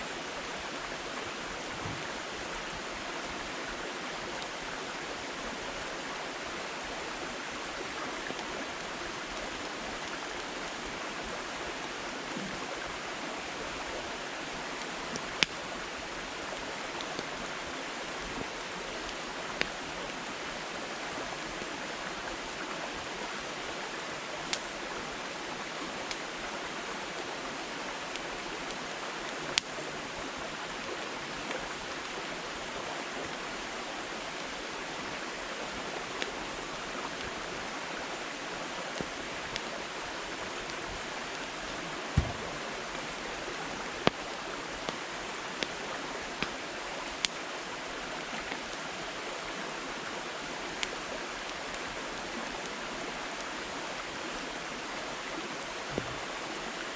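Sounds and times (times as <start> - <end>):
campfire flames hissing: 0.1 - 56.9
firewood pops and crackles: 15.1 - 15.6, 24.4 - 24.7, 29.5 - 29.8, 42.1 - 43.1.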